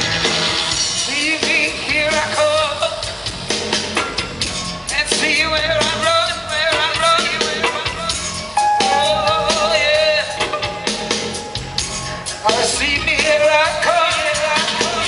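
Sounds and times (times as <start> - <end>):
live band music: 6.9 - 15.0.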